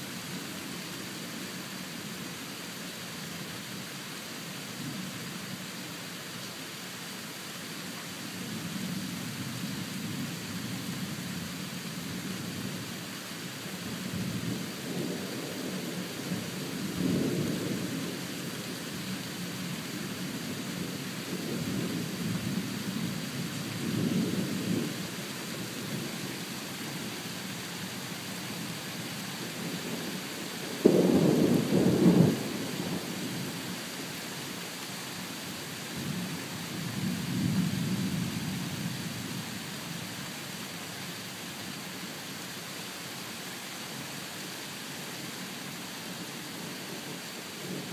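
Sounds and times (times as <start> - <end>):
rain hissing: 0.0 - 47.9
thunder rumbling: 30.7 - 33.5
loud thunderclap: 30.8 - 32.4.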